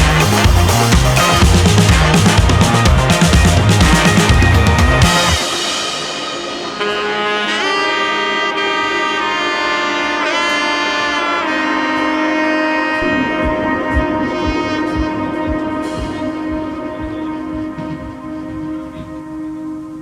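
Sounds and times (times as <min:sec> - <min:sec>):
low beats: 0:00.0 - 0:07.7, 0:13.0 - 0:20.0
melody with sliding bends: 0:00.0 - 0:20.0
sustained chords: 0:00.0 - 0:20.0.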